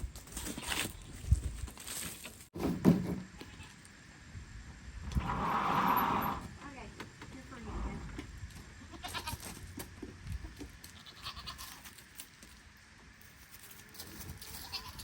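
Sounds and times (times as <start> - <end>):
goat bleating: 3.4 - 3.8, 8.8 - 9.6, 10.9 - 11.9, 14.4 - 15.0
crunching and rustling clicks: 9.3 - 14.9.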